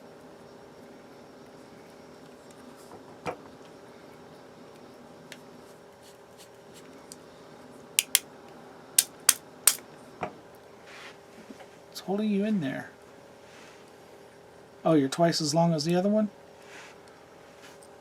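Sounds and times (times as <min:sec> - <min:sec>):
screwdriver clicking on tiny screws: 0:08.0 - 0:08.2, 0:09.0 - 0:09.8.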